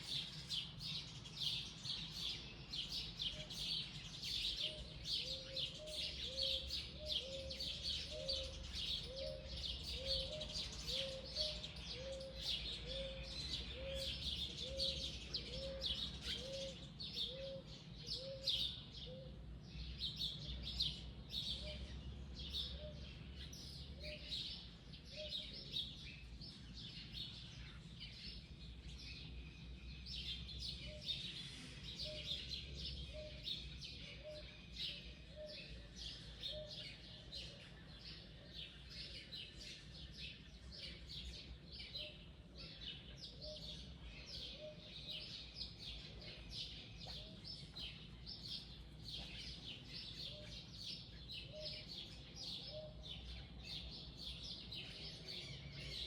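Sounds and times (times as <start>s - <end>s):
birds chirping chorus: 0.0s - 56.0s.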